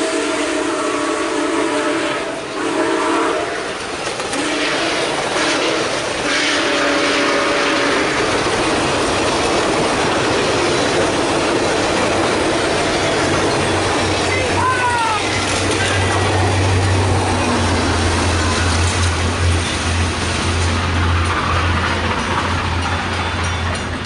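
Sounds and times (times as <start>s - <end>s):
locomotive horn blasts: 0.0s - 8.3s
passing train rushing noise: 0.0s - 24.0s.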